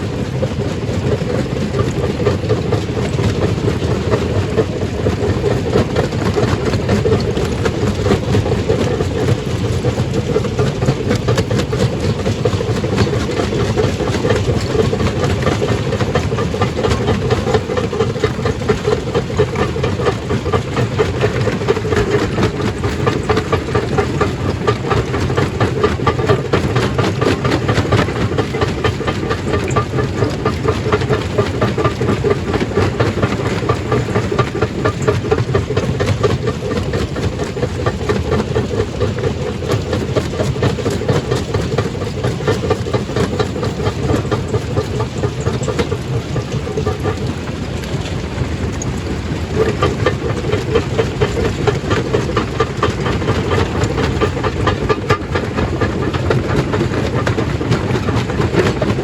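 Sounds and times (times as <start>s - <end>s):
low machine drone: 0.0s - 59.0s.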